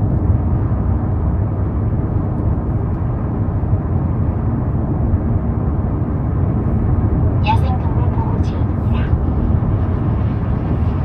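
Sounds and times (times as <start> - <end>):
car road and engine rumble: 0.0 - 11.0.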